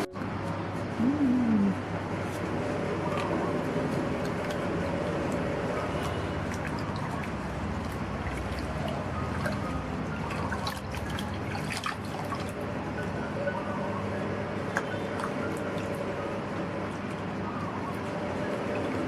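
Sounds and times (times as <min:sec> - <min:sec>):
water trickling and dripping: 0:02.3 - 0:13.6.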